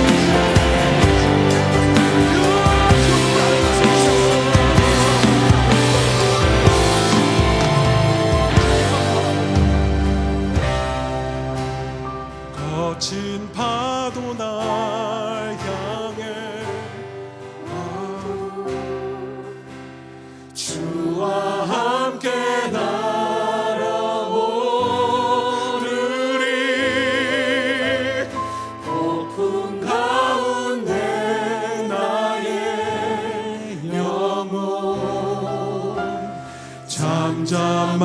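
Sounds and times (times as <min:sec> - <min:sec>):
instrumental accompaniment with bass: 0:00.0 - 0:13.8
worship singing: 0:00.0 - 0:19.8, 0:20.4 - 0:38.0.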